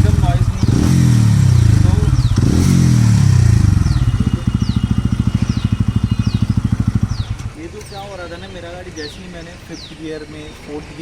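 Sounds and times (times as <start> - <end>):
motorcycle engine revving and idling: 0.0 - 8.2.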